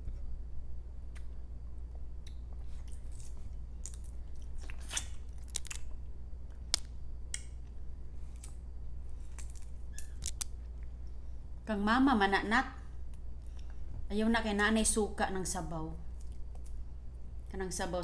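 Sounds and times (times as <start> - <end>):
steady low hum: 0.0 - 18.0
crisp chewing clicks: 2.2 - 5.9.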